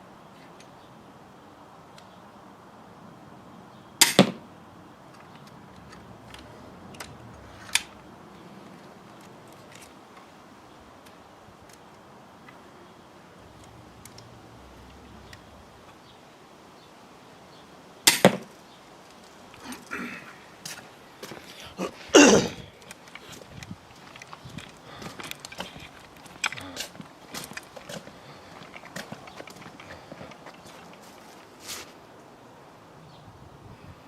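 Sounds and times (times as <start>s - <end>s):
bolt striking: 4.0s - 4.4s, 18.1s - 18.5s
crossbow shot: 4.0s - 4.4s, 18.1s - 18.5s.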